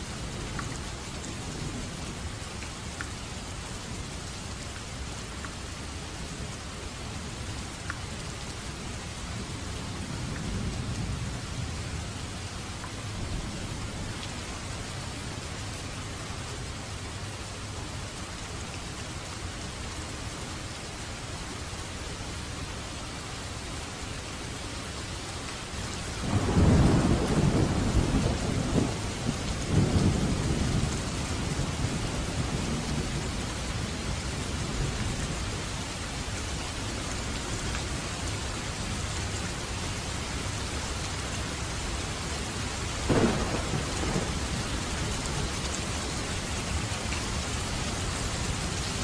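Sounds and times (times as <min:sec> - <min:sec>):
steady rain: 0:00.0 - 0:49.0
thunder rumbling: 0:26.2 - 0:33.4, 0:43.1 - 0:49.0.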